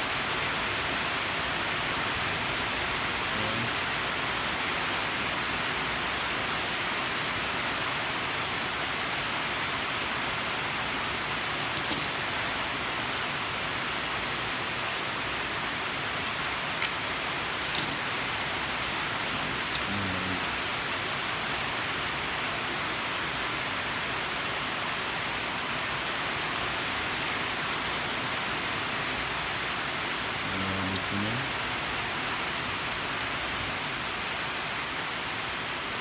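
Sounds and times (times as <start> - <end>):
steady hiss: 0.0 - 36.0.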